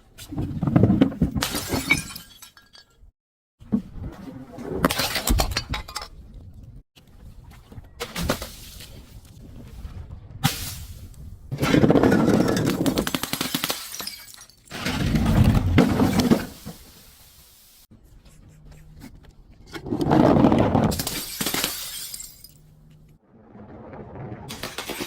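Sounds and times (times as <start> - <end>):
glass breaking and shattering: 1.4 - 2.9, 12.2 - 16.5, 20.9 - 22.7.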